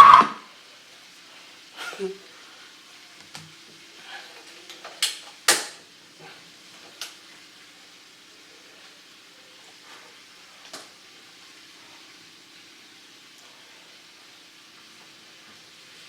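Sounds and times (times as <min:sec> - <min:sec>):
faint steady hum: 0:00.0 - 0:05.0.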